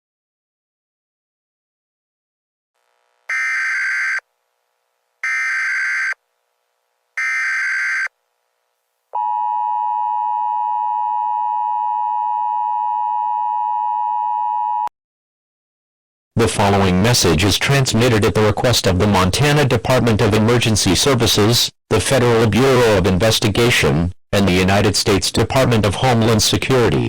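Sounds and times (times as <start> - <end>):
digital data bursts: 3.3 - 4.2, 5.2 - 6.2
two-tone attention signal: 3.3 - 4.2.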